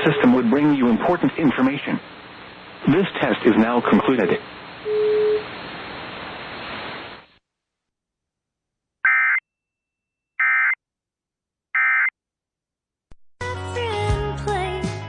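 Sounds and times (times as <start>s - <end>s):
broadcast hiss: 0.0s - 7.4s.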